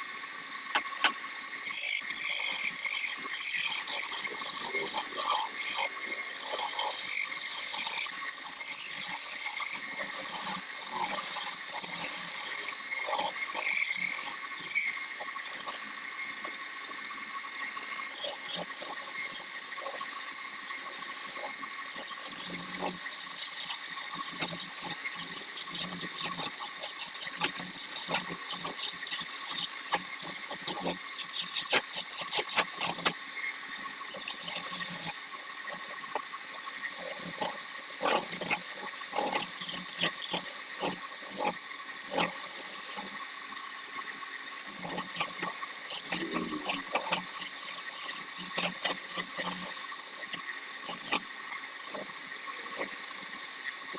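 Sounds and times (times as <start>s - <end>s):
wood lathe whine: 0.0s - 53.9s
tool clicking and rattling on wood: 21.9s - 33.2s, 44.7s - 52.1s.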